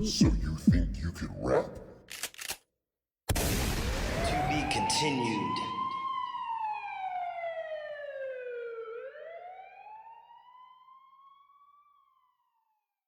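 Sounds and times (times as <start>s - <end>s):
siren wailing: 4.0s - 12.8s.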